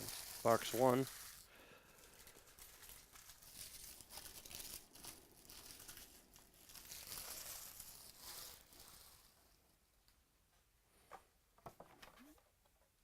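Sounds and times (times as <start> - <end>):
plastic wrapping crinkling and tearing: 0.0 - 9.6.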